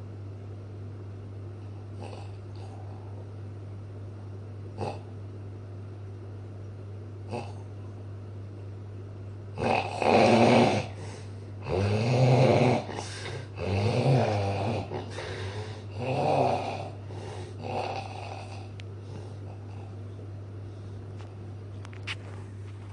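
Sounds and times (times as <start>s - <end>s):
steady low hum: 0.0s - 22.9s
person snoring: 9.6s - 19.9s.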